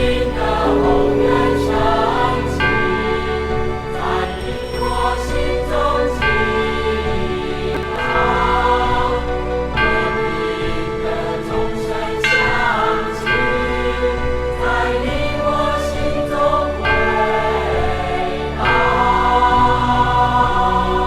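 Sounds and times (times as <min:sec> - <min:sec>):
instrumental accompaniment: 0:00.0 - 0:04.5
choir singing: 0:00.0 - 0:17.6.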